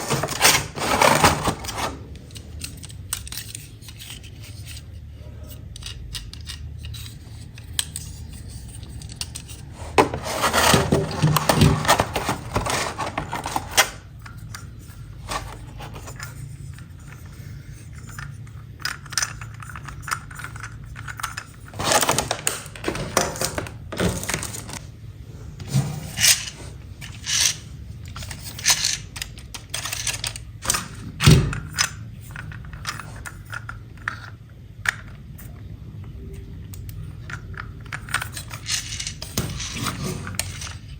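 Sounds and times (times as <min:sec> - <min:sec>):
plastic packaging rustling and clicking: 0:00.0 - 0:04.9, 0:08.8 - 0:17.2, 0:18.0 - 0:24.9.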